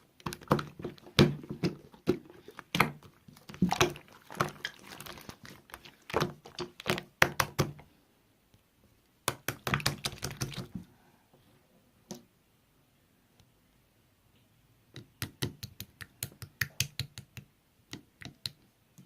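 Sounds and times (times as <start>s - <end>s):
slime squished by hand popping: 0.2s - 7.8s, 9.3s - 10.8s.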